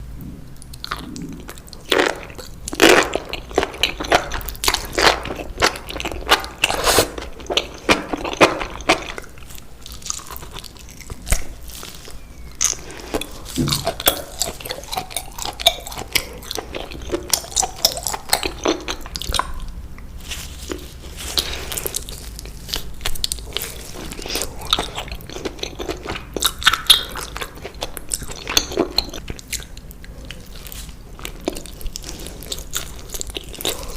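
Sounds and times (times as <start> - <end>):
crunchy chewing: 0.2 - 33.9.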